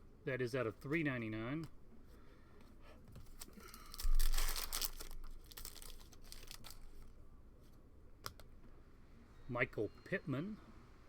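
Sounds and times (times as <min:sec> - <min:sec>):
plastic wrapper crinkling and tearing: 0:03.2 - 0:07.1.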